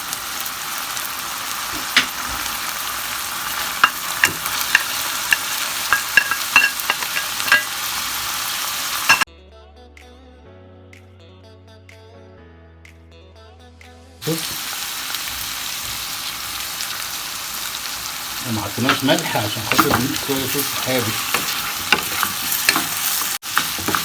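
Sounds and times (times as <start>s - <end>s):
rice sizzling in oil: 0.0s - 9.3s, 14.2s - 24.0s
spatula scraping a pan: 18.8s - 24.0s.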